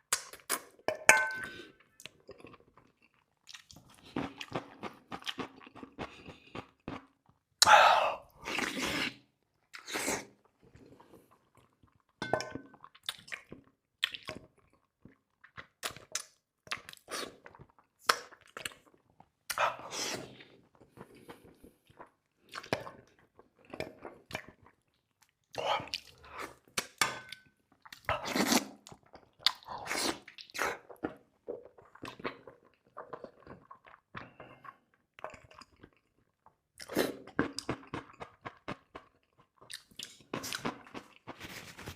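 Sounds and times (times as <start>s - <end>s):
person chewing crunchy food: 1.4s - 41.9s.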